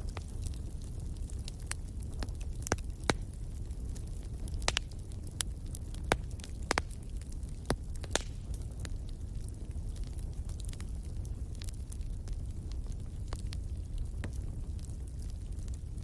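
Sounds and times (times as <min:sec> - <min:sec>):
low rumble of flames: 0:00.0 - 0:16.0
wood fire pops and snaps: 0:00.0 - 0:16.0.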